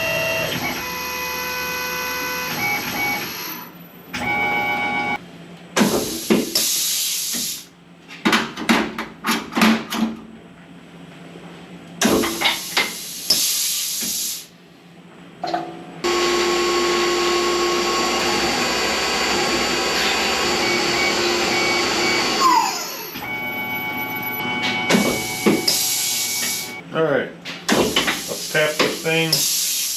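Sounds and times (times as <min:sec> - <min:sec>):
short hissing bursts: 0:06.0 - 0:07.7, 0:12.4 - 0:14.5, 0:28.1 - 0:29.9
drilling machine spindle running: 0:16.0 - 0:26.8.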